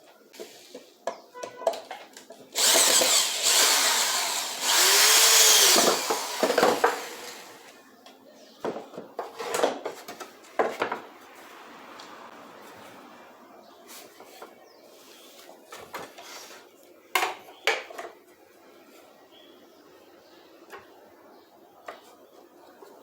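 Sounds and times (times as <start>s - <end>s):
power tool running on wood: 2.6s - 7.8s.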